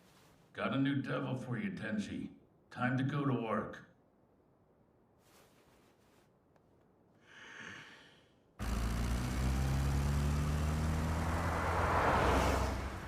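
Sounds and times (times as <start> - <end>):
chainsaw sound effect: 8.6 - 12.4.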